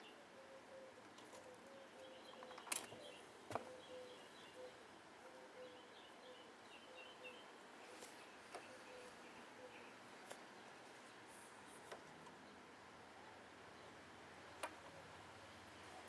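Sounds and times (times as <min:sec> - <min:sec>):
faint bird chirps: 0:00.0 - 0:16.0.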